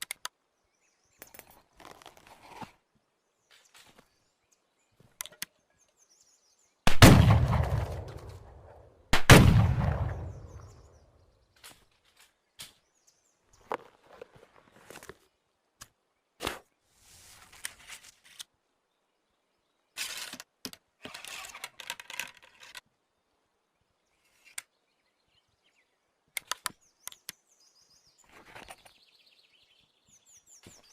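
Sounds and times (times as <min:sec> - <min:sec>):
birds chirping: 0:00.0 - 0:06.9, 0:09.8 - 0:17.0, 0:23.0 - 0:30.9.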